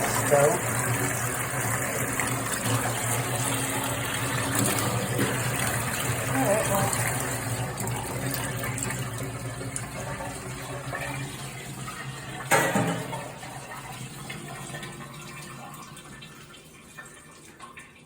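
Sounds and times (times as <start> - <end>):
water running through pipes: 0.0 - 18.0
pipe knock: 12.5 - 13.3.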